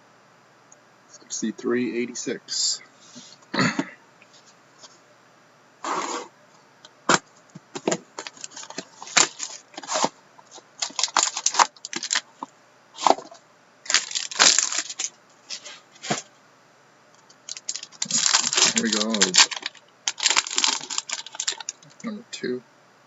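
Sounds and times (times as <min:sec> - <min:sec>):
plastic wrap and cardboard tearing: 0:07.8 - 0:12.2, 0:13.0 - 0:16.2, 0:17.4 - 0:22.0.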